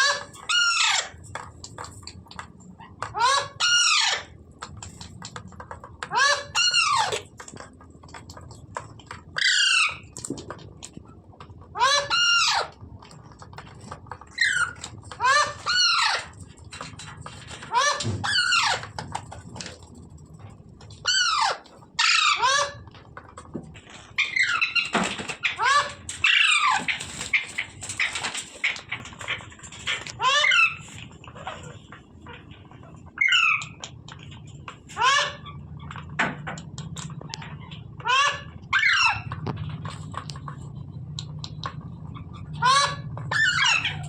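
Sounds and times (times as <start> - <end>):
parrot squawking: 0.0 - 1.2, 2.9 - 4.4, 6.0 - 7.2, 9.4 - 10.2, 11.7 - 12.8, 14.3 - 16.3, 17.6 - 19.0, 21.0 - 23.0, 24.2 - 32.5, 33.1 - 33.9, 34.9 - 36.1, 37.2 - 39.4, 42.0 - 44.0.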